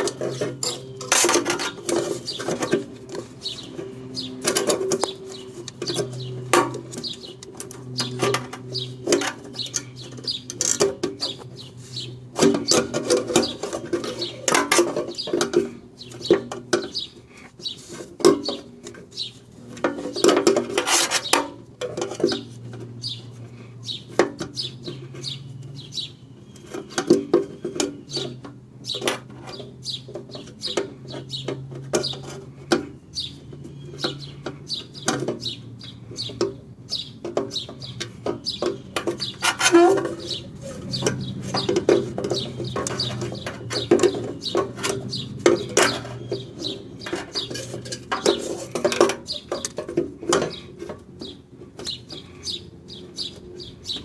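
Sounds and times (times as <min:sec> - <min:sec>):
metal scraping: 0:00.0 - 0:54.0
metal clinks and knocks: 0:37.2 - 0:52.0.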